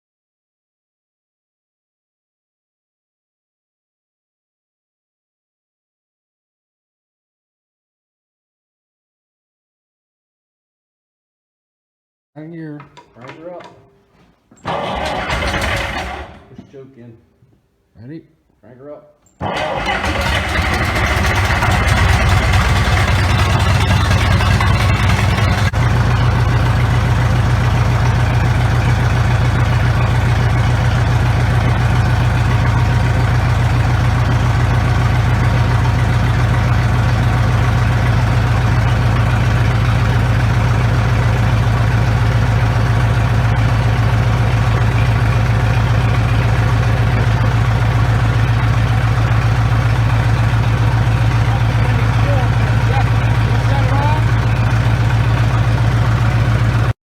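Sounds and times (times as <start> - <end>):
diesel tractor engine idling: 14.6 - 16.8, 19.4 - 57.0.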